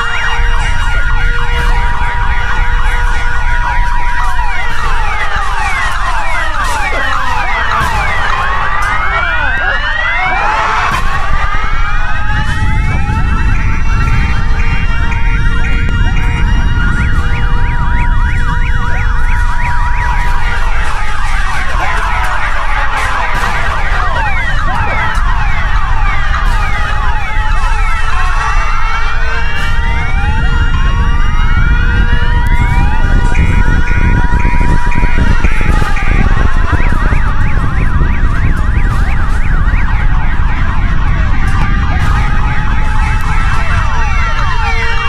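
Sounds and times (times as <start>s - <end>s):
emergency sirens wailing: 0.0s - 45.0s
low rumble: 0.0s - 45.0s.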